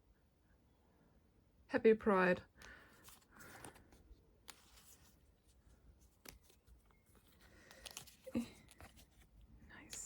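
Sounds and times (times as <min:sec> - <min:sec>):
sticker sheets rustling: 0:02.8 - 0:10.0.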